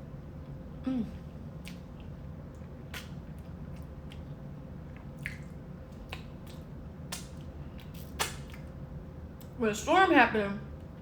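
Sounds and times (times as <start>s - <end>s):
wet chewing and mouth smacks: 1.6s - 8.8s.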